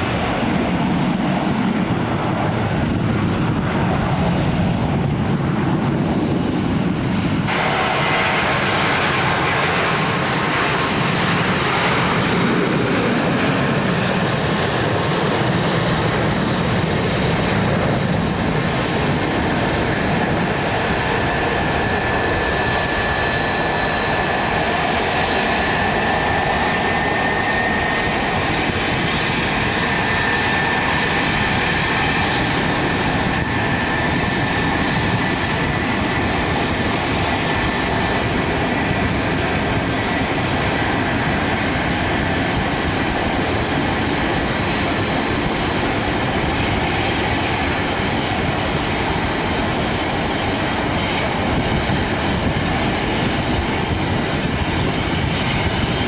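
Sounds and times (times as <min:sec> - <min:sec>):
high engine whine: 0:00.0 - 0:35.8
airliner engines running: 0:00.0 - 0:56.0.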